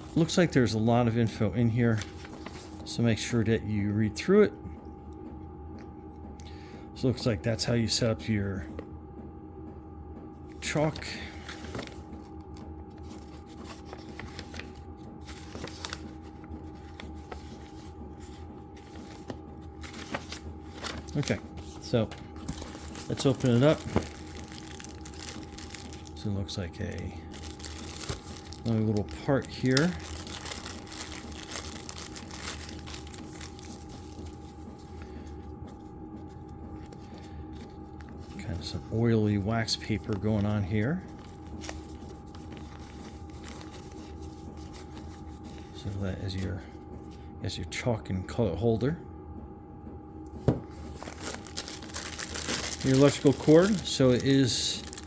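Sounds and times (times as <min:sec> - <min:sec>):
packaging and paper rustling: 0:00.0 - 0:01.1, 0:01.7 - 0:03.0, 0:10.8 - 0:38.9, 0:39.6 - 0:45.8, 0:50.4 - 0:55.0
heater humming: 0:00.0 - 0:55.0.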